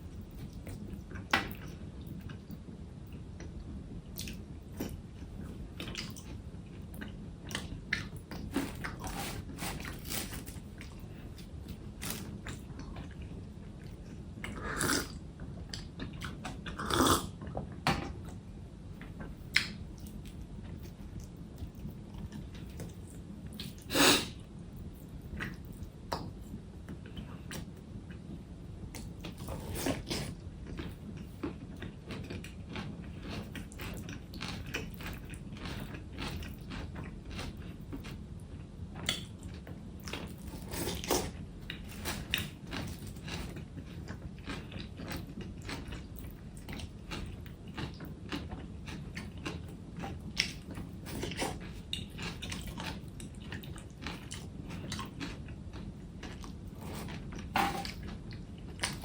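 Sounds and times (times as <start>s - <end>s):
person chewing crunchy food: 4.2s - 17.6s, 29.0s - 59.0s.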